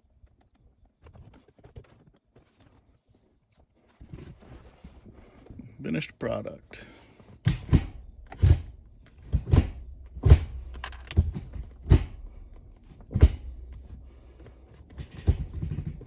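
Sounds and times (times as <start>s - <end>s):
low steady hum: 6.6s - 16.0s
gear shifter clunks: 7.5s - 16.0s.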